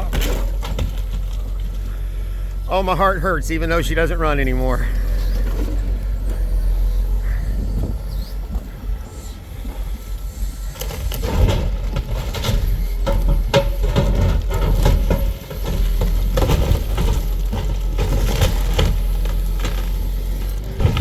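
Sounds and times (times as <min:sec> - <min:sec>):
heavy engine rumbling: 0:00.0 - 0:21.0.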